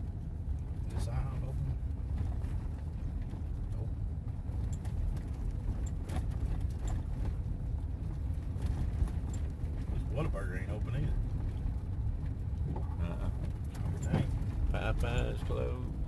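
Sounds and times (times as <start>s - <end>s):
vehicle rumble from inside cab: 0.0s - 16.0s.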